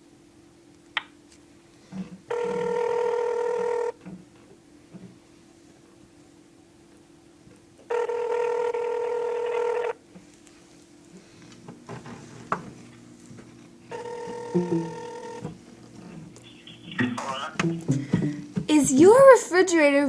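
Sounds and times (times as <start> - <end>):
telephone ringback tone: 2.3 - 4.0, 7.9 - 10.0, 13.9 - 15.6.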